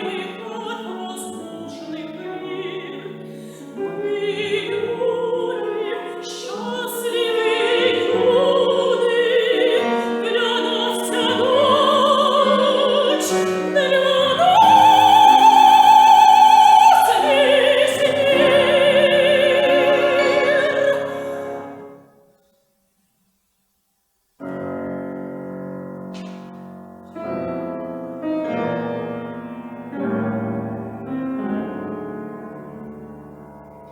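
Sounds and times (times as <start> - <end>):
operatic soprano singing: 0.0 - 21.9
piano accompaniment: 0.0 - 22.3, 24.4 - 33.9.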